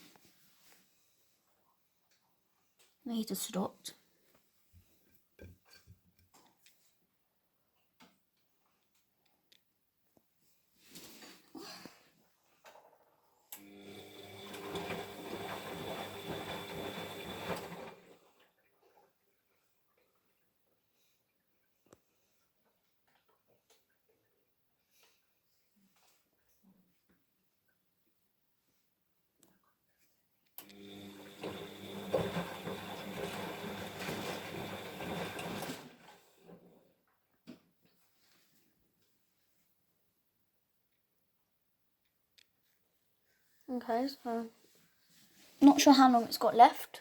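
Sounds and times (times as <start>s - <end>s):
washing machine motor whine: 13.6s - 18.2s, 30.6s - 36.7s.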